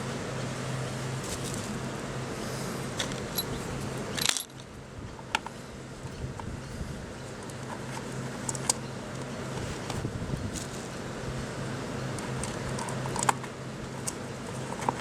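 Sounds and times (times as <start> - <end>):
small metal parts clinking: 3.0 - 4.7.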